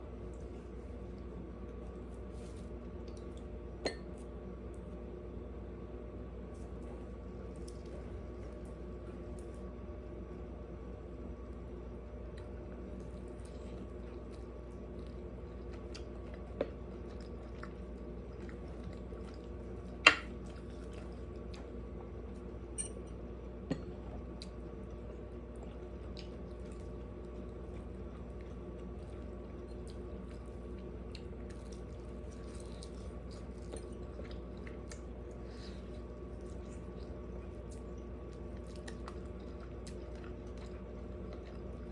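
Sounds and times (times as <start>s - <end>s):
electrical hum: 0.0s - 41.9s
person chewing food: 12.2s - 22.5s, 23.7s - 41.9s.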